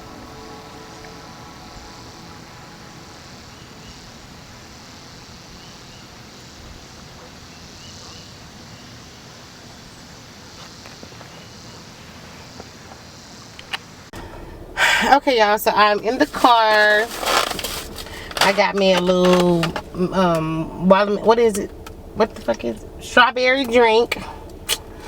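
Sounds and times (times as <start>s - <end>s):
flowing water rushing: 0.0s - 5.2s
background music: 0.0s - 5.5s
insects buzzing: 0.0s - 25.0s.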